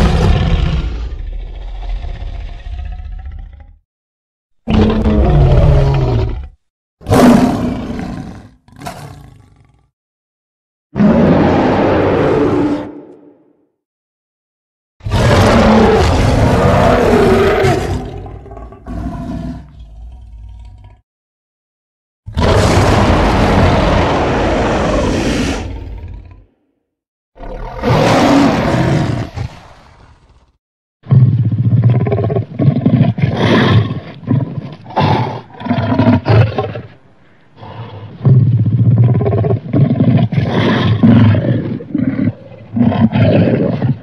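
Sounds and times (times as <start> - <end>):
monster roar: 0.0 - 3.7, 4.7 - 9.3, 11.0 - 13.4, 15.0 - 19.7, 22.3 - 26.5, 27.4 - 29.5.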